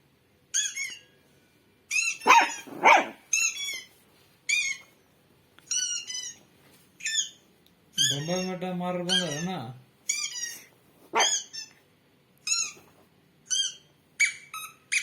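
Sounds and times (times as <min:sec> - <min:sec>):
high-pitched squeaky calls: 0:00.5 - 0:01.1, 0:01.9 - 0:03.9, 0:04.5 - 0:04.9, 0:05.7 - 0:06.4, 0:07.0 - 0:07.4, 0:08.0 - 0:11.8, 0:13.5 - 0:15.0
puppy barking: 0:02.0 - 0:03.8, 0:10.1 - 0:11.6.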